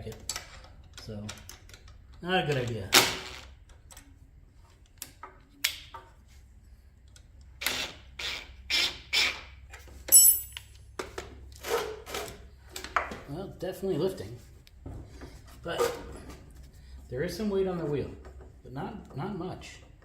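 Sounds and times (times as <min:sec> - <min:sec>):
ringing metal clink: 0:10.1 - 0:10.8.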